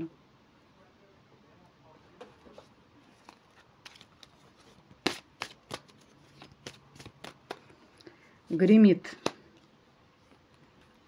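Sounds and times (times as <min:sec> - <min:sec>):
cards snapping on a table: 0:05.0 - 0:07.7.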